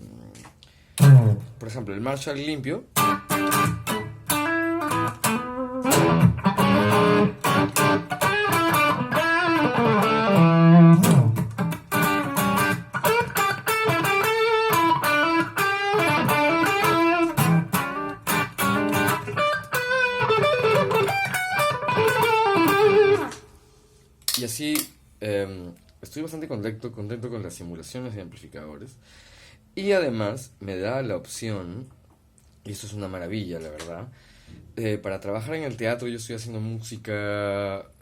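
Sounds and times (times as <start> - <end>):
clean electric guitar: 0.2 - 1.7, 3.0 - 23.6.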